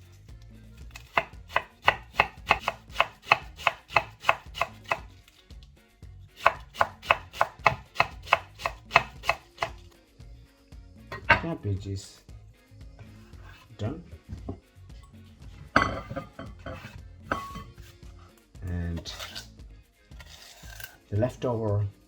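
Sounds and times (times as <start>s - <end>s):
knife shredding cabbage on board: 0.8s - 5.1s, 6.4s - 9.8s.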